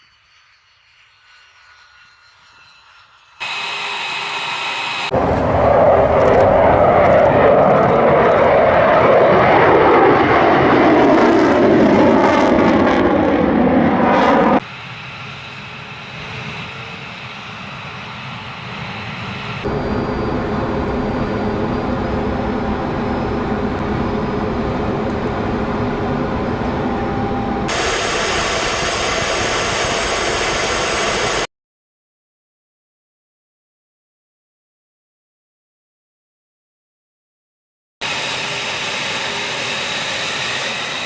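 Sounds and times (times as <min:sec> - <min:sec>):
jet aircraft engine roar: 0:00.0 - 0:31.5, 0:38.0 - 0:41.0.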